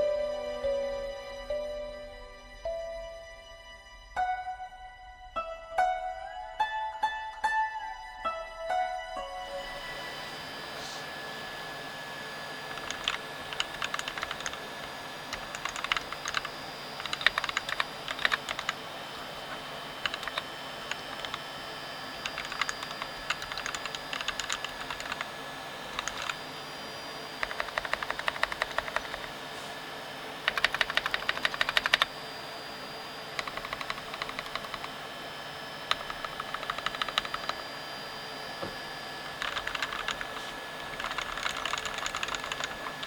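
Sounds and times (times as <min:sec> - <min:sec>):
mechanical keyboard key clicks: 0:12.7 - 0:14.6, 0:15.3 - 0:18.8, 0:20.0 - 0:21.4, 0:22.2 - 0:25.2, 0:26.0 - 0:26.4, 0:27.4 - 0:29.3, 0:30.5 - 0:32.1, 0:33.4 - 0:34.9, 0:35.9 - 0:37.6, 0:39.4 - 0:43.0.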